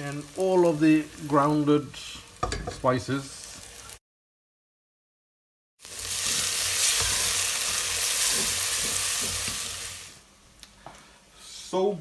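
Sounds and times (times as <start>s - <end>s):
masala sizzling in hot oil: 0.0s - 4.0s, 5.8s - 10.6s.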